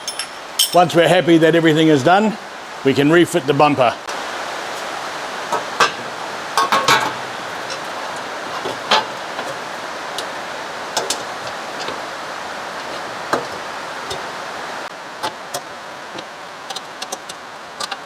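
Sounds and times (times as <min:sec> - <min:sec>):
steady background hiss: 0:00.0 - 0:18.0
light clicks and knocks of metal: 0:05.5 - 0:14.4, 0:15.2 - 0:18.0.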